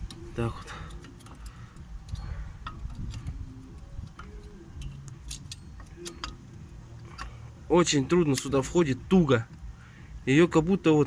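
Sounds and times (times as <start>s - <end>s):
light metal clicks and clinks: 0.0s - 7.5s.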